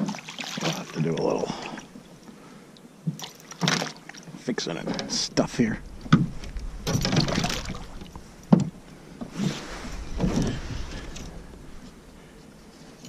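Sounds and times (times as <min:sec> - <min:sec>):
fishing gear rustling and clattering: 0:03.0 - 0:13.0.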